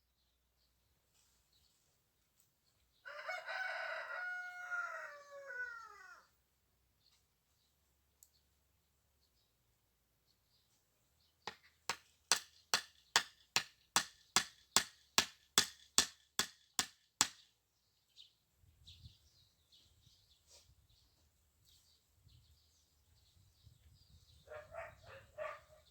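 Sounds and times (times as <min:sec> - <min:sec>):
sharp knocks: 0:11.5 - 0:17.4.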